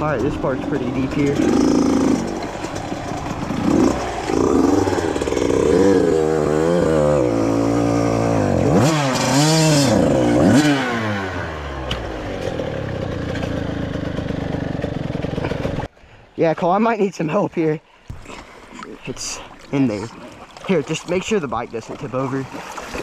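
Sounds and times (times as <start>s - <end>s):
dirt bike engine revving: 0.0s - 15.9s.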